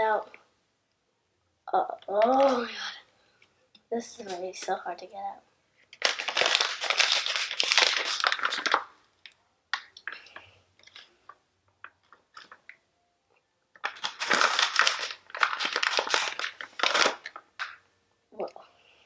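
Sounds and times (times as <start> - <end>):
plastic packaging crinkling: 5.9 - 11.1, 11.8 - 12.8, 13.8 - 17.8.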